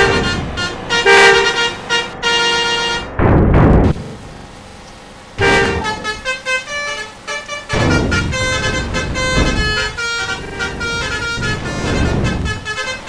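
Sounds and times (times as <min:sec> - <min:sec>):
musical air horns playing a tune: 0:00.0 - 0:03.2, 0:05.4 - 0:13.0
low rumble: 0:03.1 - 0:13.0.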